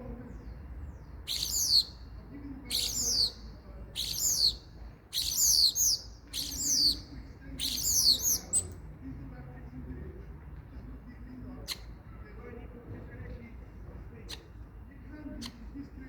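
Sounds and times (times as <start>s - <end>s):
starling calling: 1.0s - 2.1s, 2.7s - 8.8s.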